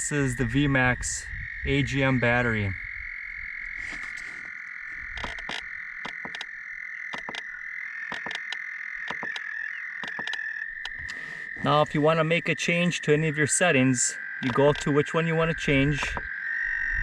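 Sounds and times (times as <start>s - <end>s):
frogs clicking calls: 0.0s - 17.0s
frogs trilling: 0.0s - 17.0s.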